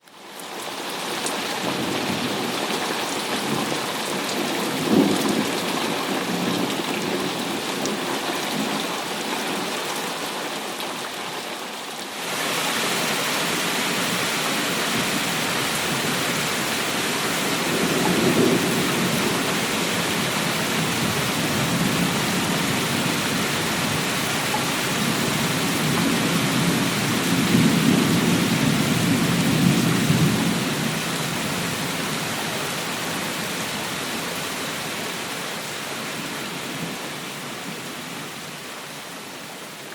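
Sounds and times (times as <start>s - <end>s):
heavy rain: 0.0s - 39.9s
thunder rolling: 17.1s - 24.1s.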